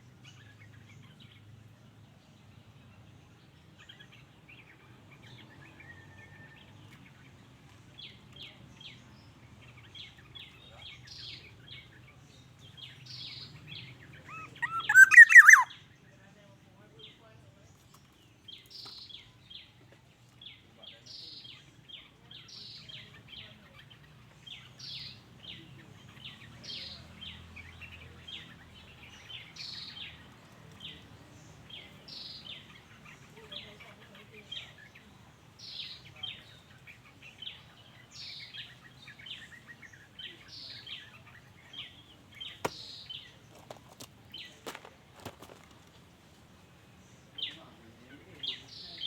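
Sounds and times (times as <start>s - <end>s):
oriole descending call: 14.3s - 15.7s
quick short bird chirps: 14.3s - 15.7s.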